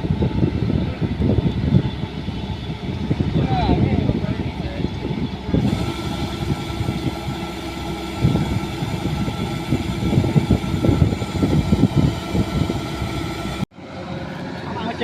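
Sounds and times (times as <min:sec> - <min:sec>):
engine running steadily: 0:00.0 - 0:15.0.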